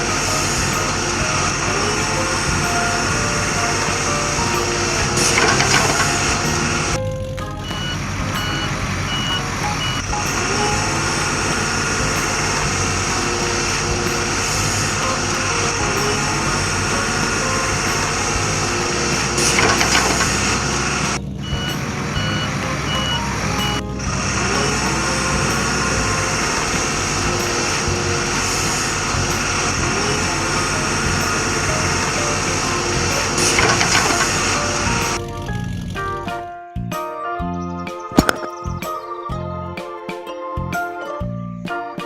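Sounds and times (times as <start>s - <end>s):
heavy vehicle engine running: 0.0s - 36.3s
reversing alarm beeps: 7.6s - 10.8s, 21.4s - 23.8s.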